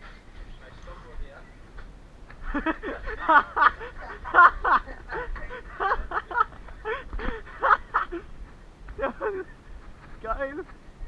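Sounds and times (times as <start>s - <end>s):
people chuckling: 2.4s - 10.1s.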